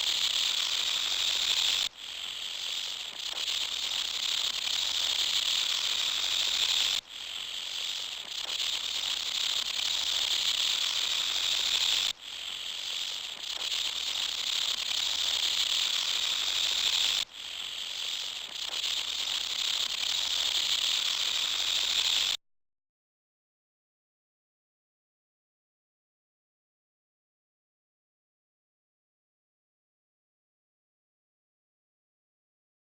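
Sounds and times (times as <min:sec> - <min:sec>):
high-pitched insect buzzing: 0:00.0 - 0:22.4.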